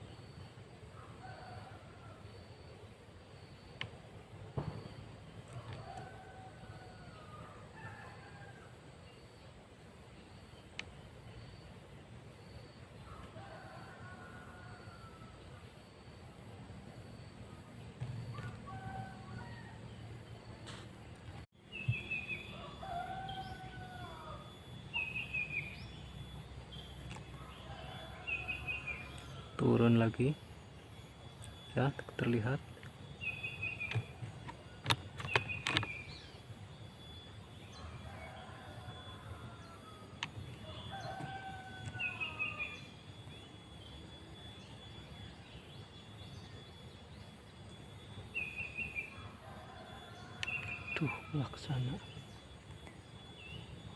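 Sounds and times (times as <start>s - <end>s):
low outdoor background hum: 0.0s - 53.9s
birds chirping: 2.3s - 53.9s
rooster crowing: 5.5s - 8.8s, 13.1s - 15.6s, 18.3s - 20.1s, 21.7s - 25.9s, 27.1s - 30.3s, 37.6s - 43.8s, 48.8s - 52.5s.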